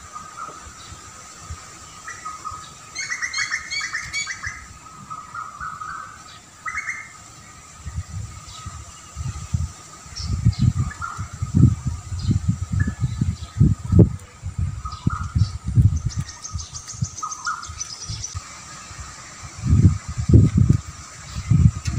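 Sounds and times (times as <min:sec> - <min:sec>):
birds chirping: 0:00.0 - 0:21.9
low rumbles: 0:10.2 - 0:21.9.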